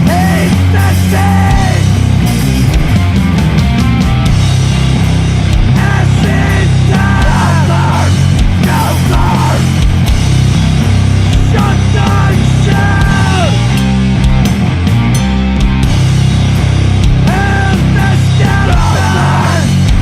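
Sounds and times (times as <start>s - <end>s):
heavily distorted metal band: 0.0s - 20.0s.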